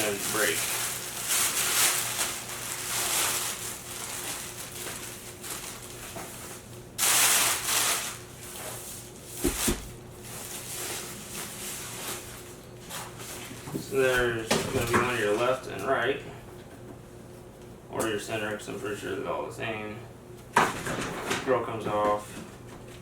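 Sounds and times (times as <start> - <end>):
packaging rustling and scraping: 0.0 - 14.2.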